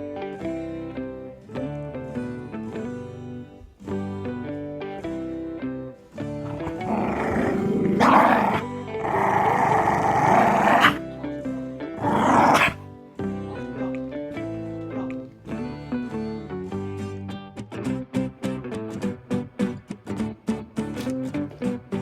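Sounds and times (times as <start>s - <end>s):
dog growling: 6.4s - 11.0s, 12.0s - 12.8s.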